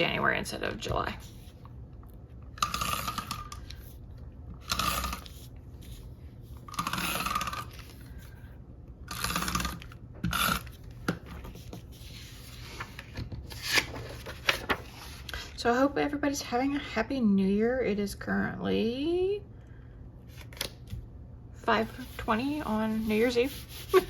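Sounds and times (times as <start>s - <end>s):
tape rasping along paper: 21.9s - 24.0s.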